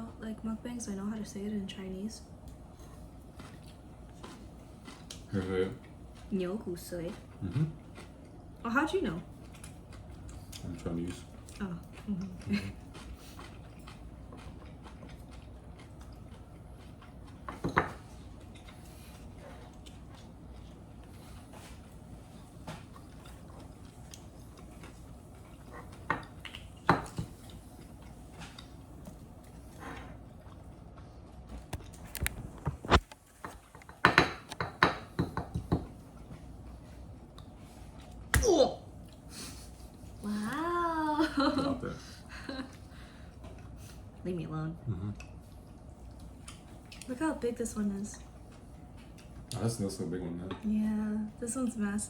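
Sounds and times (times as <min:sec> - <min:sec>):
faint chewing: 0:02.4 - 0:34.0, 0:45.0 - 0:47.2, 0:47.9 - 0:49.8.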